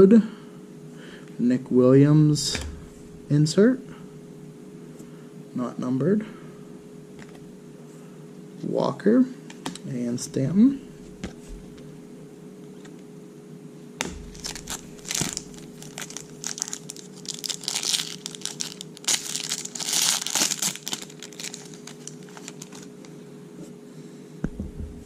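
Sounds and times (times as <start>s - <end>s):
foil wrapper tearing and crinkling: 14.2s - 22.9s.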